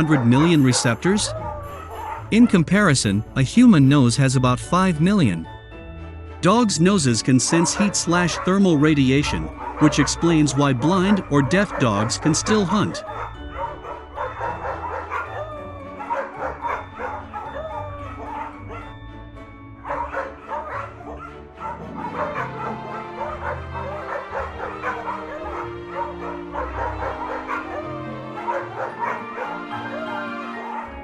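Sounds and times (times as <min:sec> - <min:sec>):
dog barking: 0:00.0 - 0:02.3, 0:07.5 - 0:08.6, 0:09.4 - 0:19.0, 0:19.8 - 0:31.0
background music: 0:00.0 - 0:31.0.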